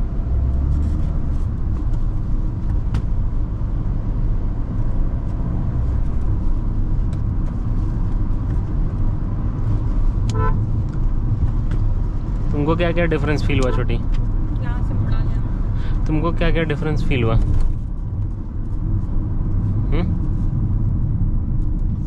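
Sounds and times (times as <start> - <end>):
car engine and road noise: 0.0 - 22.0
car horn beep: 10.3 - 10.6, 13.5 - 14.0.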